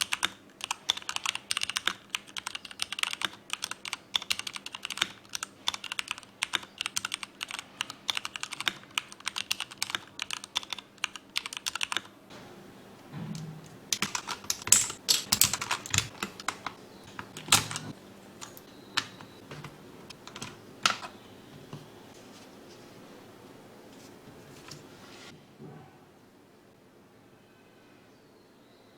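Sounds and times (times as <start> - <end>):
mechanical keyboard key clacks: 13.9 - 21.2.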